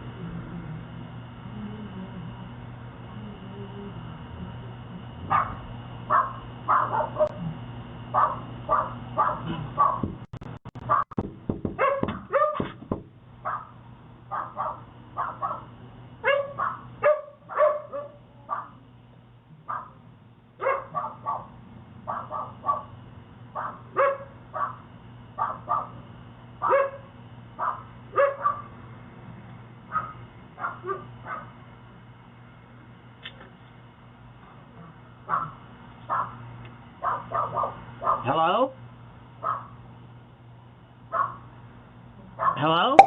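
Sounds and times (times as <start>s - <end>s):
dog barking: 5.3s - 7.4s, 8.1s - 10.1s, 10.8s - 11.2s, 11.8s - 12.7s, 13.4s - 18.8s, 19.7s - 20.0s, 20.6s - 22.9s, 23.5s - 26.0s, 26.6s - 28.7s, 29.9s - 31.6s, 35.3s - 36.4s, 37.0s - 38.3s, 39.4s - 39.8s, 41.1s - 41.5s, 42.4s - 42.7s.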